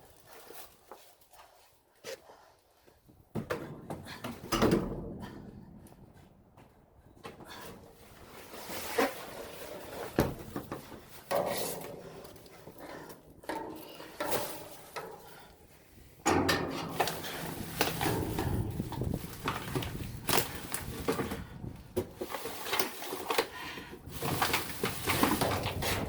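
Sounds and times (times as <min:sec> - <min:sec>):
objects rummaged through: 0:03.8 - 0:26.0.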